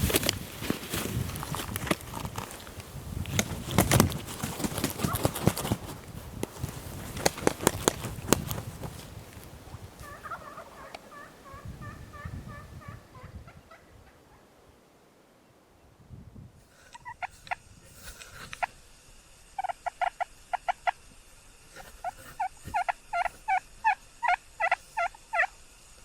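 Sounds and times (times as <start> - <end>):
wild turkey gobbling: 7.2 - 14.6, 16.9 - 17.6, 19.6 - 21.0, 21.8 - 25.6.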